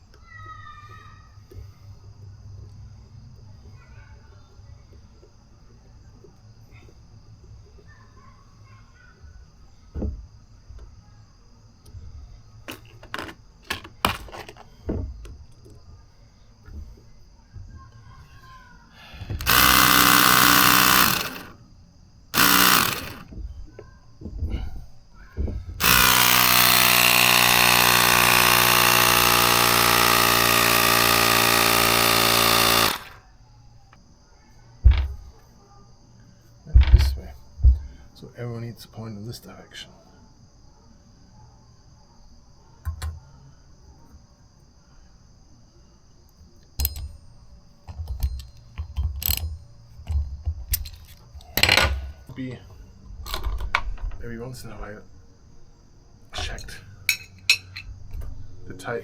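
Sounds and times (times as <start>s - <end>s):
clicks and knocks on scooter wheel: 12.7s - 15.8s
small motor buzzing hum: 19.3s - 21.6s, 22.4s - 23.4s, 25.8s - 33.3s.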